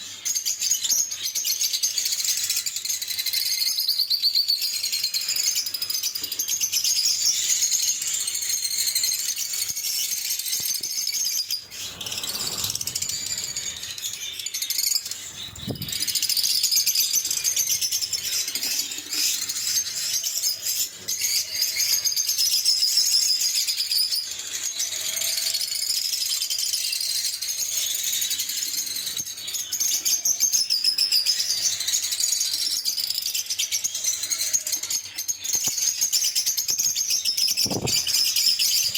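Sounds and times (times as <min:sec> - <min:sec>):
lovebirds chirping: 0:02.0 - 0:23.0, 0:33.7 - 0:38.9.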